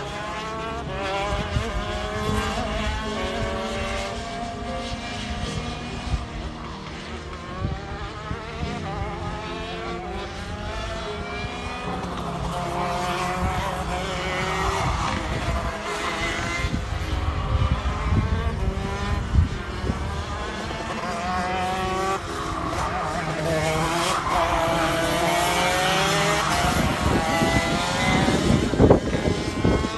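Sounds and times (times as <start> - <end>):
racing engines revving: 0.0 - 29.9.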